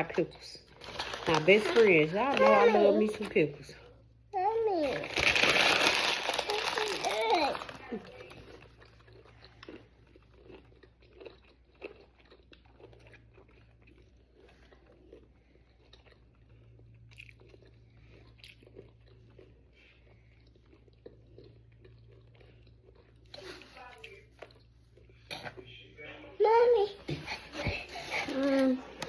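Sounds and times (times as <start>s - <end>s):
crunchy chewing: 5.1s - 25.6s.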